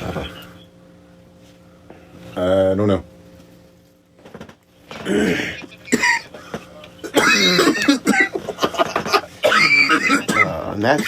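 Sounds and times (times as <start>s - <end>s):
person clearing throat: 5.0s - 11.0s
person coughing: 5.0s - 11.0s.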